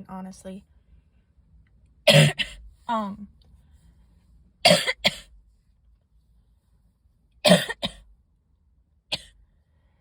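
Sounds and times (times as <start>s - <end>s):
person coughing: 2.1s - 2.6s, 4.6s - 5.3s, 7.4s - 8.0s, 9.1s - 9.4s.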